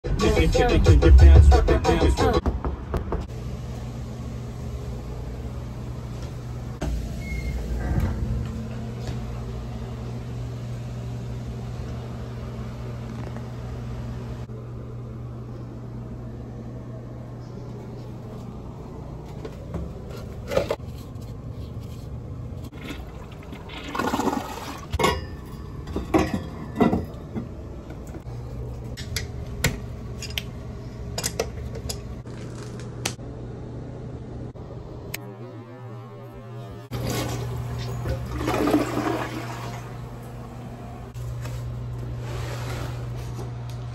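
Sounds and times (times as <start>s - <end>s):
toilet flushing: 22.7s - 25.0s, 36.9s - 41.1s
low hum: 33.0s - 43.9s.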